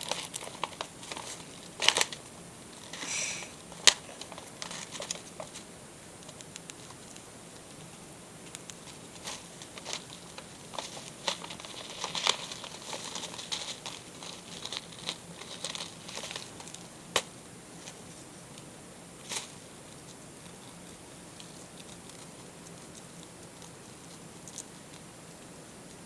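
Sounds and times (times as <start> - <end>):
paper bag crinkling: 0.0 - 2.2, 9.2 - 16.9.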